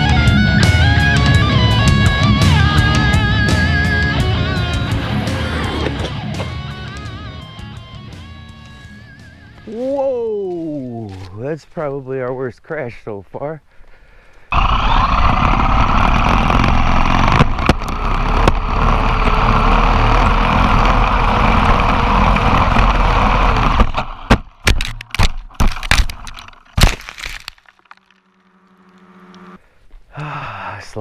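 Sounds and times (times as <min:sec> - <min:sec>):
rc truck motor and tyre rush: 0:02.0 - 0:07.3, 0:14.5 - 0:26.6.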